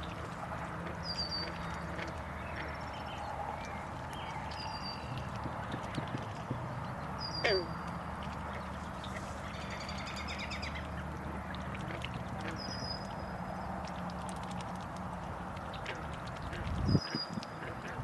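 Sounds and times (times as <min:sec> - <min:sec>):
birds calling: 0:00.0 - 0:11.7
steady low hum: 0:00.0 - 0:13.8.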